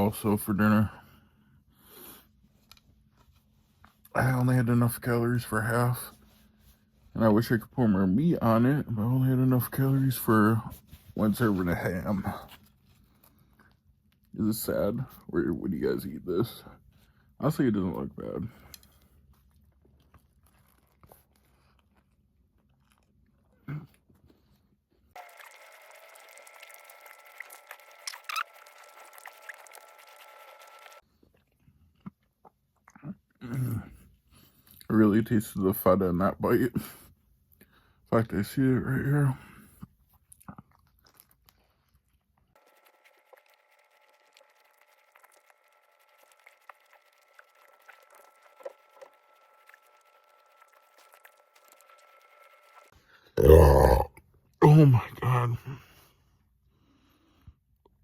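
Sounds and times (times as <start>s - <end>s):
person chewing sandwich: 18.8s - 25.5s, 26.4s - 34.9s, 39.8s - 54.3s.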